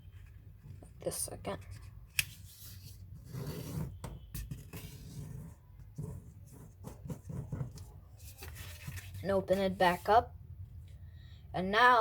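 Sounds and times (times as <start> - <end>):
paper rustling and creasing: 7.0 - 10.1.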